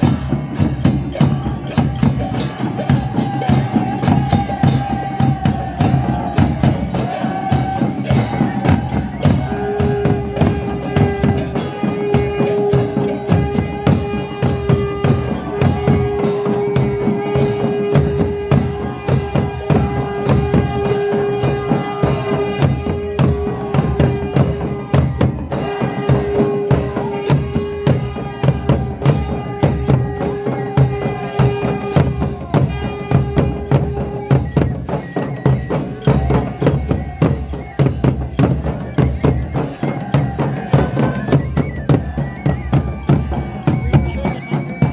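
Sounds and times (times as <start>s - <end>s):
fast hand percussion: 0.0s - 44.9s
wavering melody: 33.4s - 44.9s.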